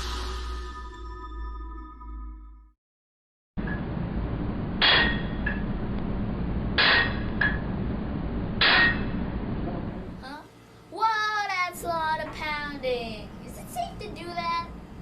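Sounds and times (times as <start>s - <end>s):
machinery hum: 3.6s - 15.0s.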